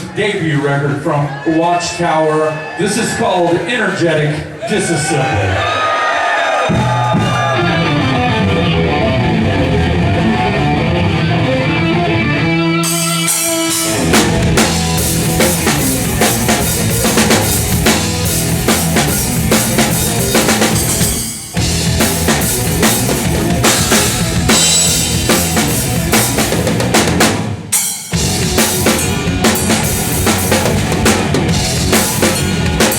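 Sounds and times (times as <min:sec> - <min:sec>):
drum kit: 0:06.6 - 0:32.9
heavy metal band playing: 0:06.6 - 0:32.9.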